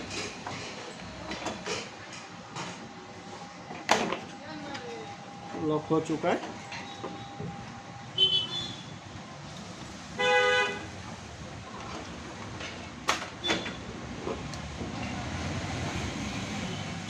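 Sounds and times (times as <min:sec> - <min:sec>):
steady background noise: 0:00.0 - 0:17.0
vehicle horn honk: 0:08.2 - 0:08.9, 0:10.2 - 0:10.9.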